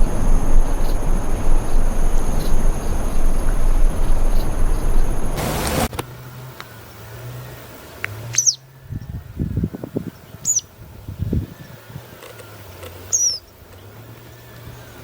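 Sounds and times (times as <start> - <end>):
low rumbling thumps: 0.0 - 6.0
low steady hum: 0.0 - 15.0
bird calls sliding downward: 8.3 - 8.6, 12.2 - 13.5.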